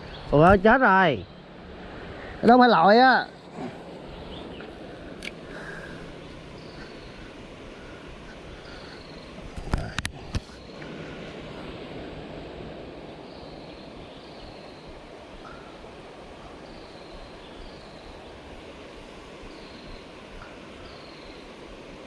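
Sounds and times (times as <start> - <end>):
stream water flowing over rocks: 0.0 - 22.0.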